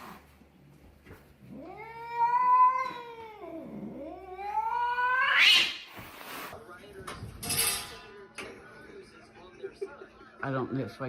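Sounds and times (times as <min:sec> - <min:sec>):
cat yowling: 0:01.5 - 0:05.9.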